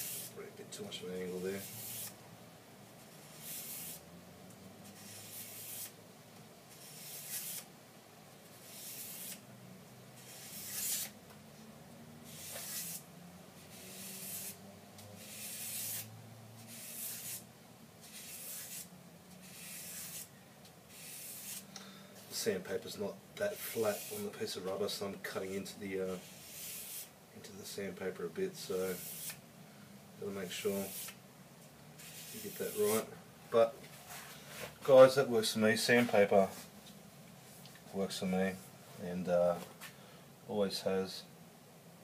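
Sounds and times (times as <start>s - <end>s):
knife blade rasping on sandpaper: 0.0s - 0.4s, 1.6s - 2.2s, 3.2s - 4.0s, 4.9s - 5.9s, 6.7s - 7.7s, 8.6s - 9.4s, 10.2s - 11.2s, 12.3s - 13.1s, 13.7s - 14.6s, 15.2s - 20.3s, 20.9s - 21.7s, 23.5s - 24.4s, 26.2s - 27.1s, 28.9s - 29.4s, 30.6s - 31.2s, 32.0s - 33.1s.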